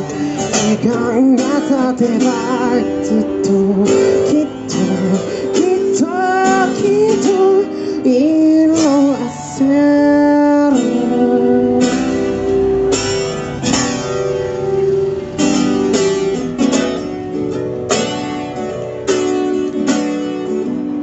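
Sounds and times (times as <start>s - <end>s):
guitar strumming chords: 0.0s - 21.0s.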